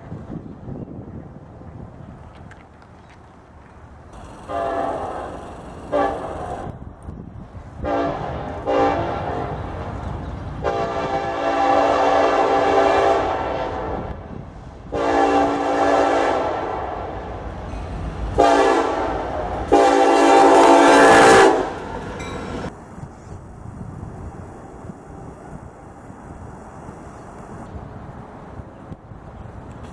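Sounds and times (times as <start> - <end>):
locomotive air horn: 4.1 - 6.8, 7.8 - 9.9, 10.6 - 14.2, 14.9 - 22.7.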